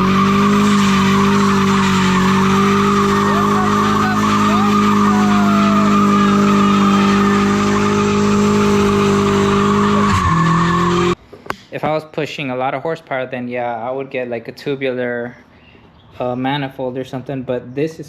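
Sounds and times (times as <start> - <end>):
loud engine running: 0.0 - 11.2.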